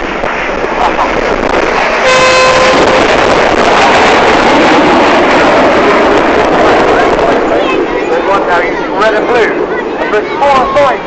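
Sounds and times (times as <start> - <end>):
jets roaring overhead: 0.0 - 11.0
short horn toot: 2.0 - 3.0.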